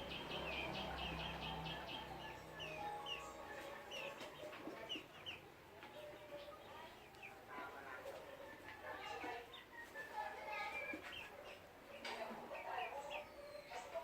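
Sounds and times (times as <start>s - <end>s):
high falling chirps: 0.0s - 4.2s
chickens clucking: 0.0s - 14.0s.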